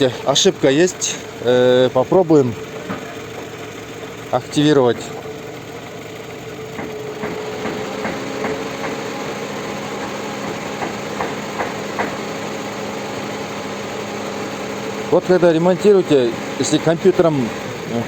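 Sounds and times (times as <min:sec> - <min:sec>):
light engine clicks and knocks: 0:00.0 - 0:12.5
car engine idling: 0:00.0 - 0:18.0.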